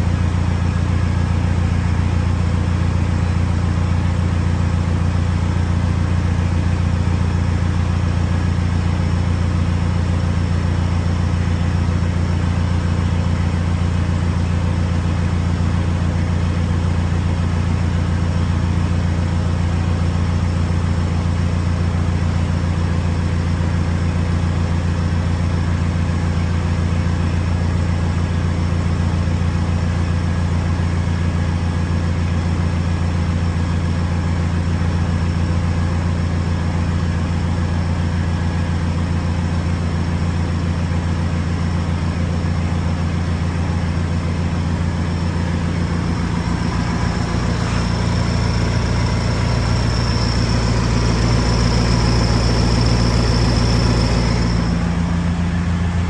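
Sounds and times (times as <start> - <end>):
vehicle engine idling: 0.0 - 56.0
thin high whine: 45.8 - 55.5.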